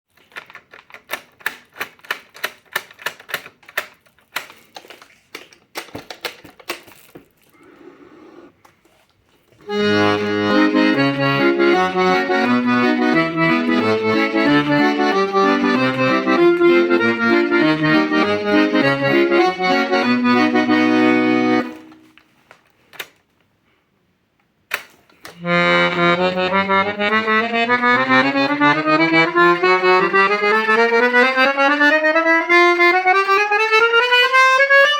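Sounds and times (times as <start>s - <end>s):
accordion playing: 7.7s - 8.5s, 9.6s - 22.2s, 25.4s - 34.9s
sharp clicks: 24.7s - 25.4s.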